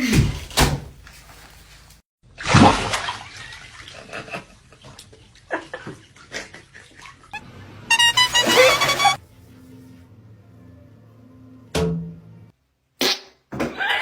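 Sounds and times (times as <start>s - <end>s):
water splashing and sloshing: 0.0s - 7.3s.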